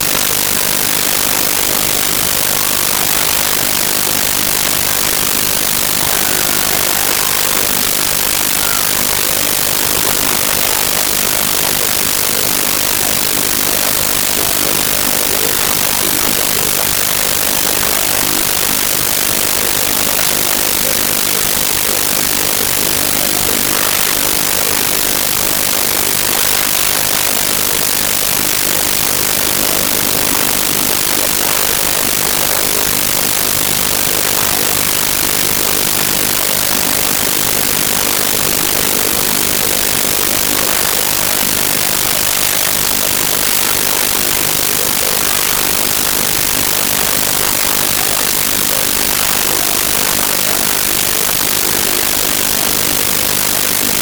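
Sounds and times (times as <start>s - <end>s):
loud static hiss: 0.0s - 54.0s.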